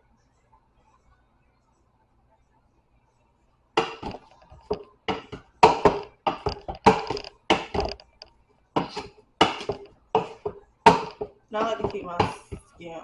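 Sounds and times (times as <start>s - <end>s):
masher knocking against pot: 3.8s - 8.1s, 8.8s - 12.6s.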